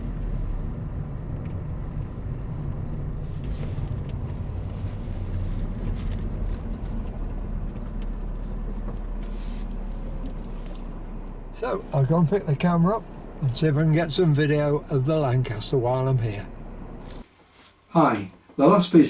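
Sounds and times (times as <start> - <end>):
car engine and tyre rumble: 0.0 - 18.6
faint light clinks: 1.4 - 3.0, 5.6 - 11.4.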